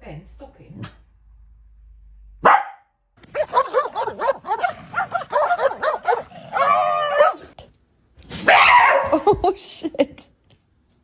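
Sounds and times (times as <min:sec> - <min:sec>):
dog yelping and whining: 0:05.2 - 0:07.6, 0:08.4 - 0:09.2.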